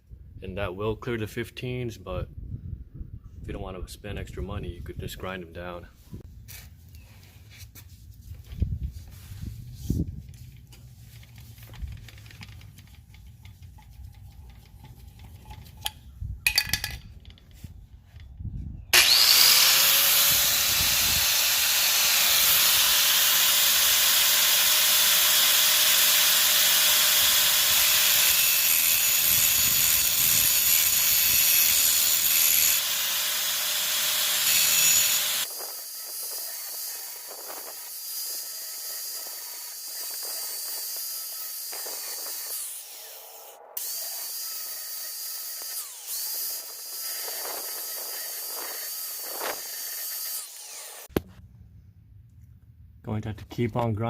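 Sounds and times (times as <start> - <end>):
power grinder grinding metal: 19.0 - 51.1.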